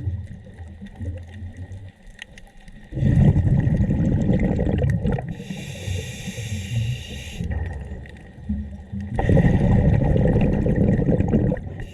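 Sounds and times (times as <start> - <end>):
exhaled bubbles gurgling: 0.0 - 11.9
regulator inhalation hiss: 5.3 - 7.5.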